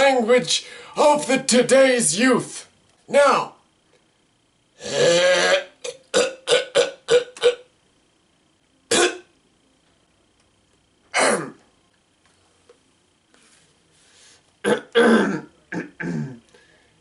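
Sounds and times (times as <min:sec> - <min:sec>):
man clearing his throat: 0:08.9 - 0:09.3, 0:11.1 - 0:11.6, 0:14.6 - 0:16.4
man coughing: 0:08.9 - 0:09.3, 0:11.2 - 0:11.6, 0:14.6 - 0:16.4.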